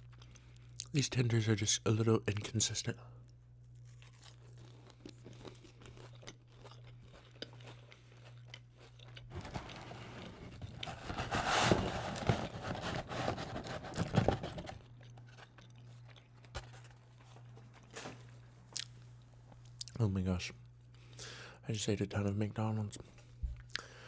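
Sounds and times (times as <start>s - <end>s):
chewing and crunching food: 0.0s - 1.0s, 3.2s - 11.3s, 11.9s - 20.0s.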